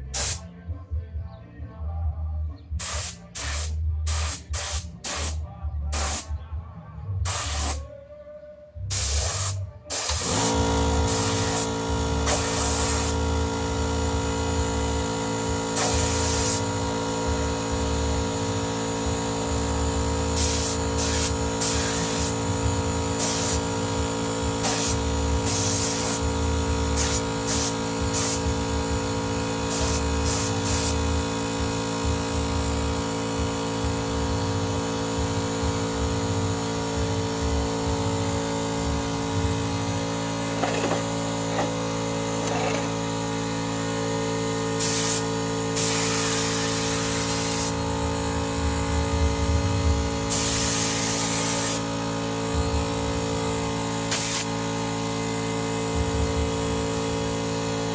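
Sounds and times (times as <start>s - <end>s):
air compressor humming: 0.0s - 0.4s, 2.8s - 6.3s, 7.2s - 7.8s, 8.9s - 57.9s
compressed air hissing: 0.1s - 0.4s, 2.8s - 5.4s, 6.0s - 6.3s, 7.3s - 7.8s, 8.9s - 13.3s, 15.8s - 16.7s, 20.4s - 23.8s, 24.6s - 26.4s, 27.0s - 28.6s, 29.7s - 31.0s, 40.4s - 43.4s, 44.7s - 47.9s, 50.3s - 52.2s, 54.1s - 54.6s.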